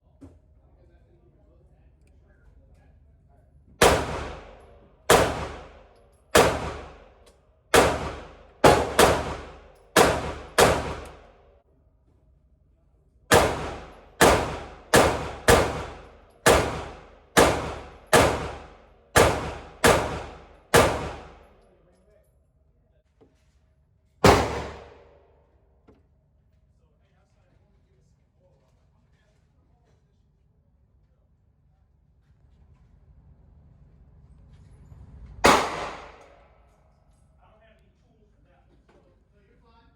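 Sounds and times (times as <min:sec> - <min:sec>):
gunshots: 0:03.8 - 0:11.4, 0:13.3 - 0:21.6, 0:24.2 - 0:25.2, 0:35.4 - 0:36.5.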